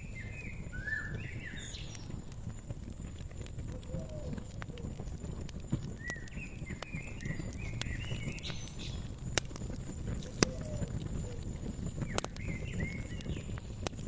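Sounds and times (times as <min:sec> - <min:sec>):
small birds chirping: 0:00.0 - 0:14.0
wood fire crackling: 0:00.0 - 0:14.0
sharp pops: 0:05.8 - 0:11.0, 0:12.0 - 0:14.0.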